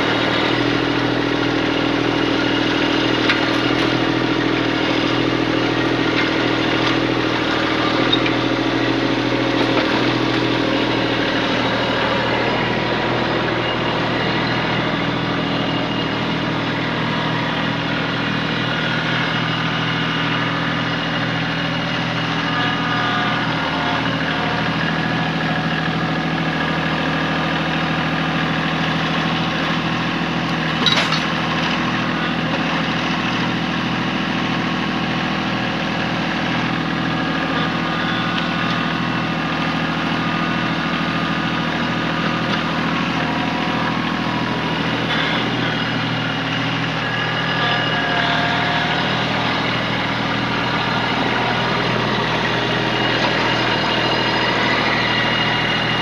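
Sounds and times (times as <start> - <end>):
tractor diesel engine running: 0.0 - 56.0.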